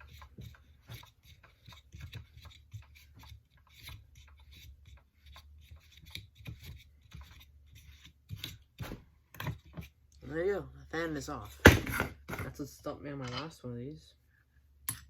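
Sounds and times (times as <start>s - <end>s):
small clicks and scrapes of parts: 0.0s - 10.2s.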